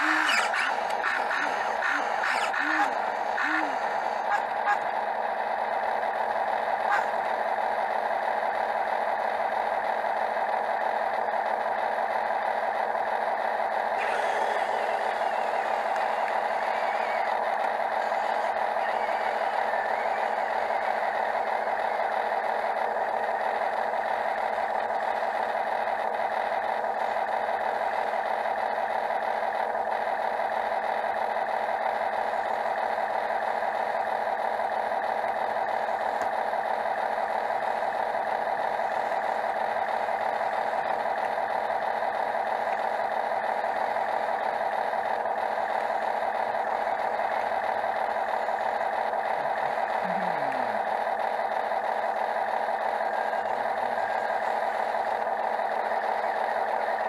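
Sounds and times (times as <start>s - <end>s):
heavy machinery engine drone: 0.0s - 57.0s.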